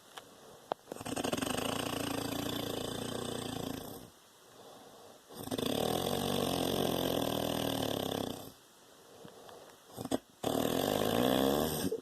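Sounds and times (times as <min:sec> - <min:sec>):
man snoring: 0:00.9 - 0:04.1, 0:05.3 - 0:08.6, 0:09.9 - 0:12.0.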